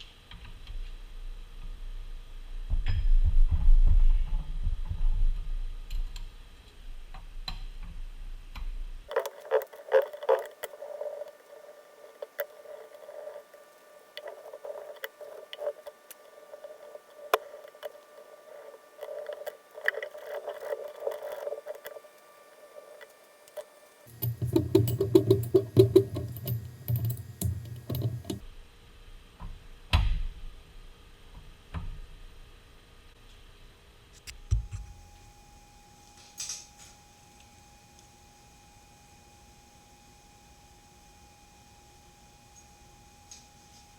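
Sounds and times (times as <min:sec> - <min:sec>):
metalworking machine noise: 0:09.1 - 0:28.4
thin steady tones: 0:09.1 - 0:28.4, 0:34.6 - 0:43.9
machine clicking: 0:23.0 - 0:28.4.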